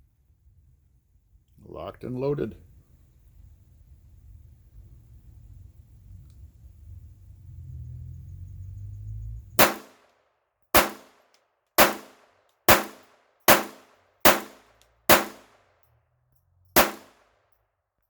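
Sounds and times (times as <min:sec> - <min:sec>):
pistol shots: 0:09.6 - 0:10.0, 0:10.8 - 0:11.2, 0:11.8 - 0:15.6, 0:16.8 - 0:17.2.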